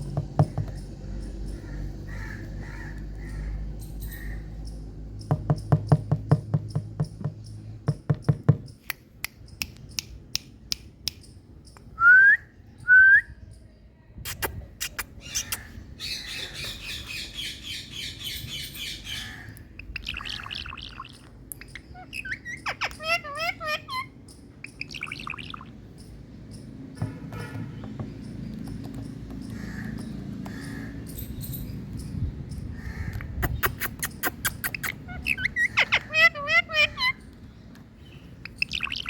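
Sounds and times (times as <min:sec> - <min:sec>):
parrot calling: 0:14.8 - 0:25.7, 0:32.8 - 0:37.4, 0:38.4 - 0:39.0.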